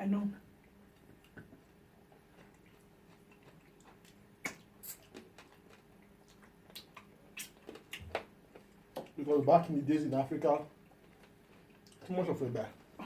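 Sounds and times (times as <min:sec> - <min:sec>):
mouth clicks and smacks eating: 0:00.6 - 0:09.2, 0:10.9 - 0:12.1.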